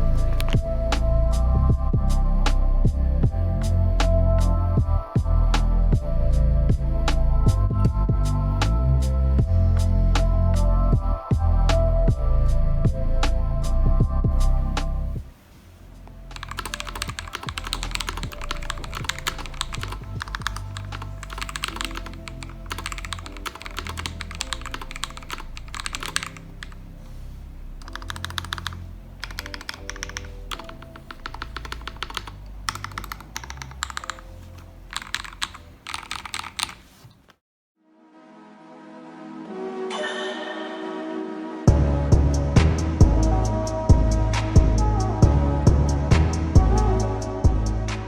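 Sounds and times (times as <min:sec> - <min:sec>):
background music: 0:00.0 - 0:37.0, 0:37.8 - 0:48.0
mechanical keyboard typing: 0:16.4 - 0:26.8, 0:27.8 - 0:36.9.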